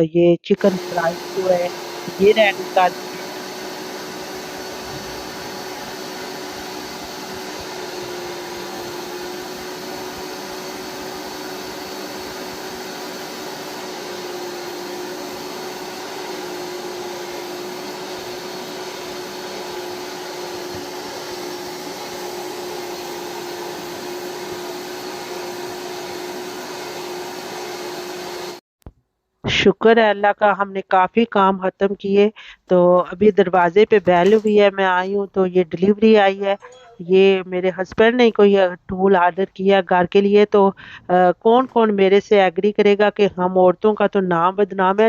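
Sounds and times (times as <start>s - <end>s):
small electric motor running: 0.6s - 26.5s.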